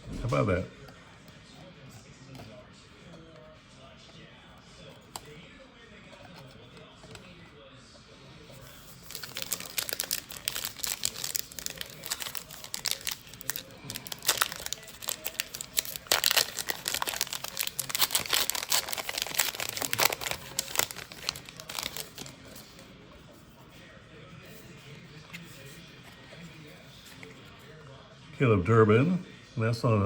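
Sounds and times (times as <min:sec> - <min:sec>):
wrapper crinkling: 0:08.8 - 0:22.8.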